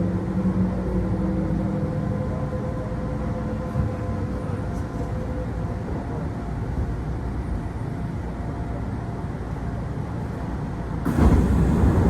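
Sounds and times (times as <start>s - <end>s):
train rumble and hum: 0.0s - 12.0s
rush of noise: 11.1s - 12.0s.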